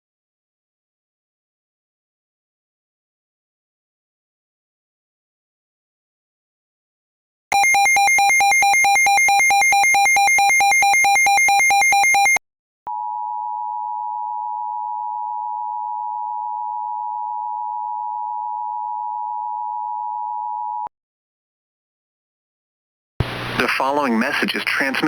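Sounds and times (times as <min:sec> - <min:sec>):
steady two-tone alert signal: 0:07.5 - 0:12.4
warbling electronic alert tone: 0:07.5 - 0:12.4.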